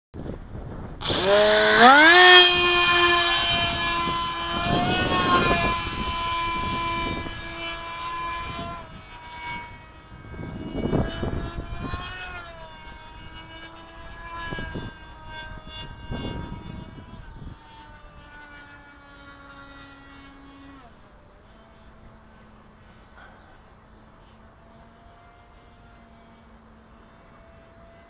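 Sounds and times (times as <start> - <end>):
wind gusts on microphone: 0.2 - 18.4
electric motor propeller whine: 0.2 - 28.0.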